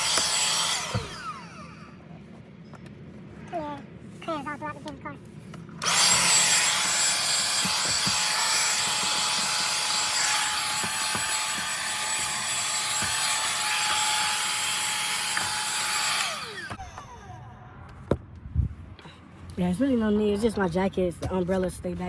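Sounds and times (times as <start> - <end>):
vacuum cleaner running: 0.0 - 1.9, 5.8 - 16.9
motor spinning down: 0.0 - 2.0, 5.8 - 17.4.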